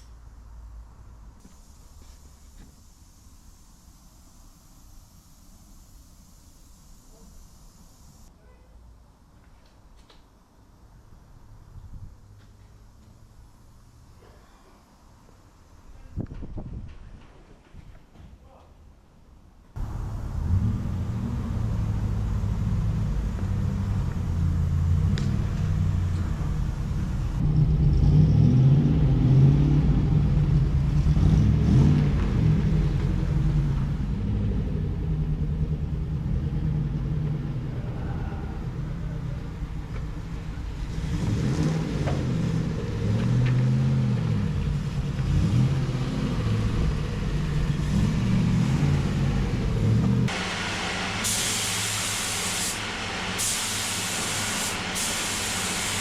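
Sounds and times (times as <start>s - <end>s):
steady hiss: 0.0s - 16.6s, 19.7s - 27.4s, 50.2s - 56.0s
spray bursts: 1.4s - 8.3s, 50.2s - 56.0s
engine revving: 19.8s - 56.0s.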